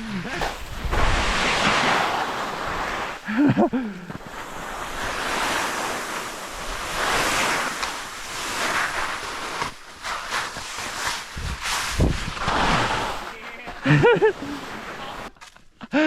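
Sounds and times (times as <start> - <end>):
rustling through corn stalks: 0.0 - 15.8
wind on microphone: 11.3 - 13.2.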